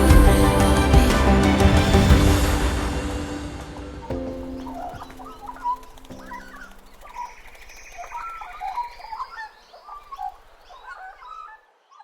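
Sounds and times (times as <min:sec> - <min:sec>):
music: 0:00.0 - 0:06.6
birds singing: 0:01.7 - 0:12.0.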